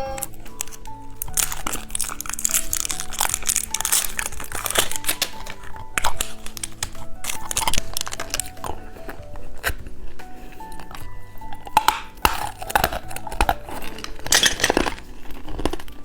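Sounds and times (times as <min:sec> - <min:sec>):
light background music: 0:00.0 - 0:16.0
plastic packaging crinkling: 0:00.0 - 0:16.0.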